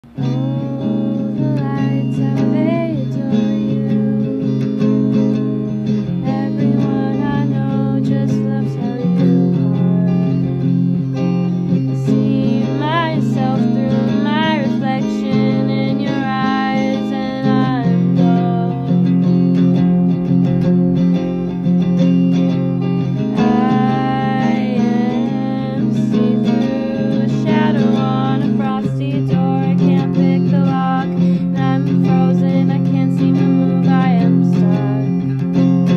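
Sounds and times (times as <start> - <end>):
person singing: 0.0 - 5.4, 6.2 - 19.4, 23.2 - 35.9
acoustic guitar playing: 0.0 - 35.9.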